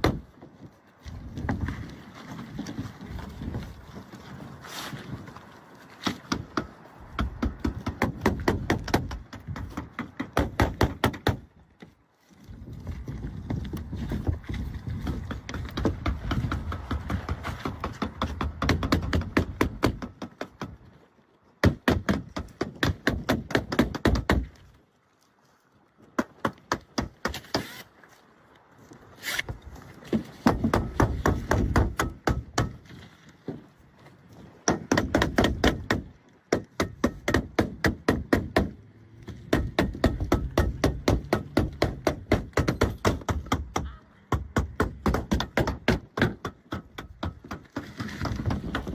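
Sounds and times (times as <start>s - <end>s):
hammer nailing shingles: 6.0s - 11.5s, 13.2s - 20.9s, 29.3s - 33.0s, 34.6s - 48.9s.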